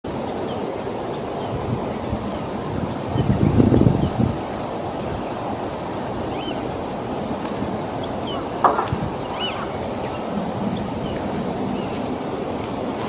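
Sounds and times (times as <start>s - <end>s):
wind rumble on microphone: 1.4s - 13.0s
faint bird calls: 6.2s - 12.1s
brief knock: 8.4s - 9.7s.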